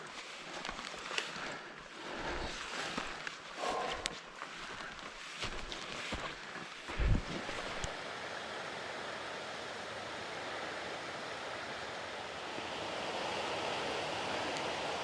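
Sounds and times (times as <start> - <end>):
fast-flowing river rushing: 7.2 - 15.0.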